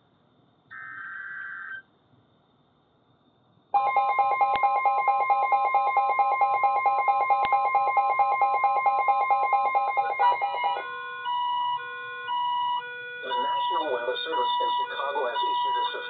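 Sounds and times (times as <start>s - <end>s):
steady alarm tone: 0.7s - 1.8s, 3.8s - 16.0s
slow long beeps: 0.7s - 1.9s, 3.8s - 16.0s
rapid electronic beeping: 3.8s - 11.6s, 12.6s - 16.0s.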